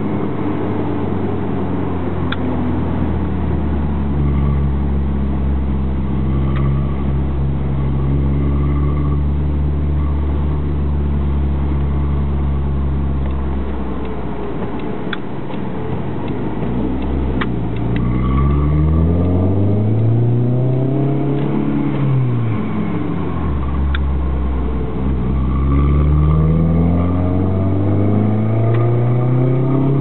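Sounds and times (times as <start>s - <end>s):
four-cylinder engine revving: 16.0s - 30.0s.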